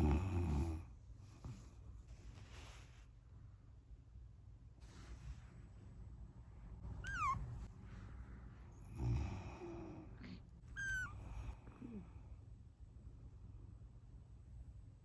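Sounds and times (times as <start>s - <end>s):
kitten mewing: 7.0s - 7.5s, 10.7s - 11.2s.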